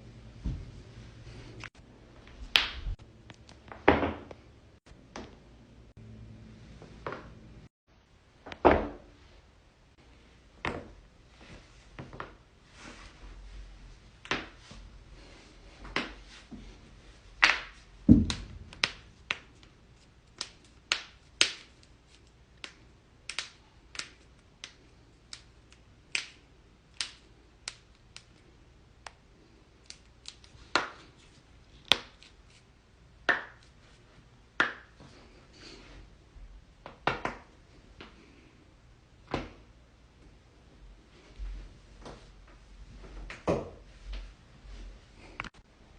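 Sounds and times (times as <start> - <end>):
deep thud: 18.1 - 18.8.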